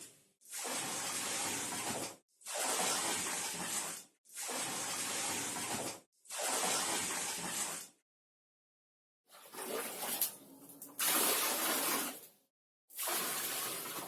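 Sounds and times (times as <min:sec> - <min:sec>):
tap water pouring into bucket: 0:09.4 - 0:12.4, 0:13.0 - 0:14.0.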